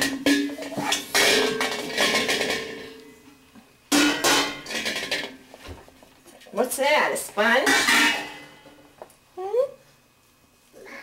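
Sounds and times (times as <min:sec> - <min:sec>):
dishes and cutlery clattering: 0:00.0 - 0:03.0, 0:03.9 - 0:05.4, 0:07.6 - 0:08.6.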